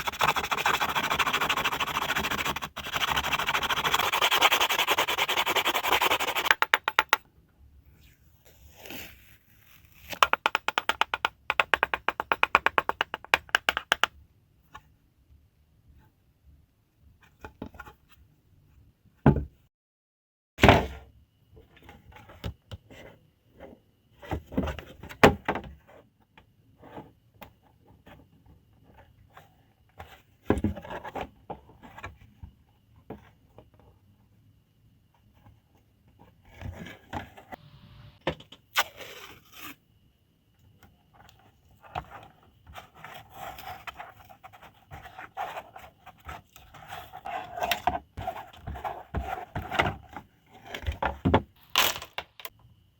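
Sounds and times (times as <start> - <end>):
sanding hard plastic: 0.0 - 6.7
knocks and thunks of plastic part: 10.2 - 14.1, 19.2 - 19.6, 50.8 - 51.5.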